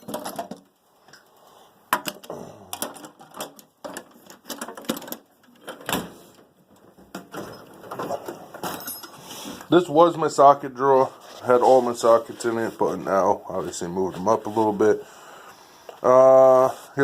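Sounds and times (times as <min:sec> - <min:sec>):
metal tools clattering: 0:00.0 - 0:00.7, 0:02.0 - 0:05.9, 0:07.1 - 0:09.6.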